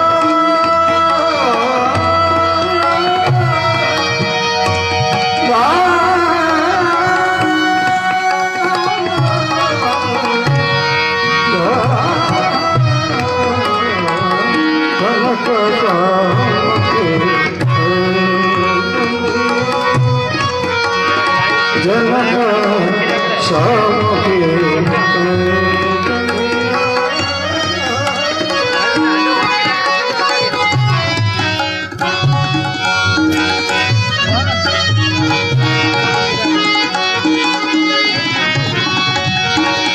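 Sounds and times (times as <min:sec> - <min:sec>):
sliding melody line: 0:00.1 - 0:39.9
hand drum beat: 0:28.6 - 0:39.9.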